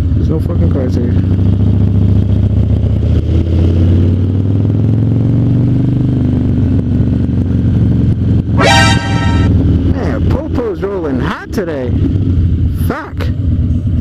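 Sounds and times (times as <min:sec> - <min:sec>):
motorcycle engine accelerating: 0:01.0 - 0:10.5.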